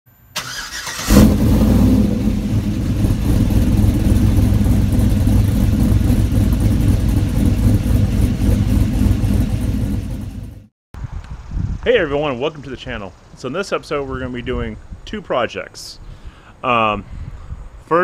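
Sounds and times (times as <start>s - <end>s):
engine cranking: 0.4s - 1.8s
v eight engine revving and rumbling: 1.0s - 10.7s.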